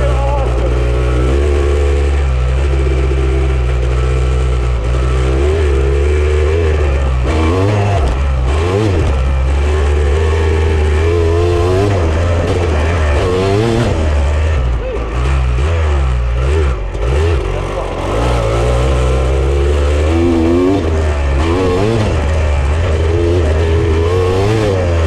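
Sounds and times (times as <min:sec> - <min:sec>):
off-road vehicle engine revving: 0:00.0 - 0:25.0.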